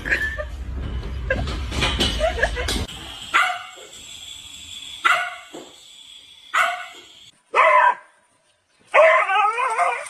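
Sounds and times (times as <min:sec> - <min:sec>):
dog barking: 0:03.3 - 0:03.7, 0:05.0 - 0:05.5, 0:06.6 - 0:08.1.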